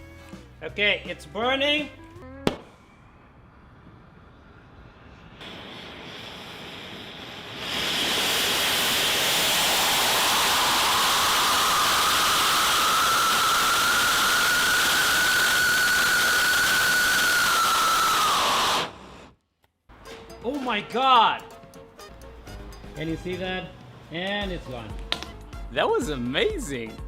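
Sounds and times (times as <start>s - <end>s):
rocket engine hissing: 2.8s - 19.3s
whistling tone: 9.8s - 19.0s.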